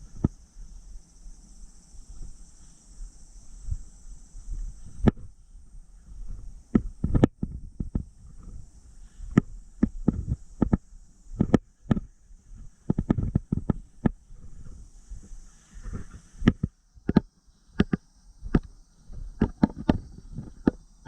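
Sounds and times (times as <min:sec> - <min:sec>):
steady high hiss: 0:00.0 - 0:21.0
sharp knocks and thumps: 0:09.3 - 0:10.8, 0:11.4 - 0:14.7, 0:15.8 - 0:20.8.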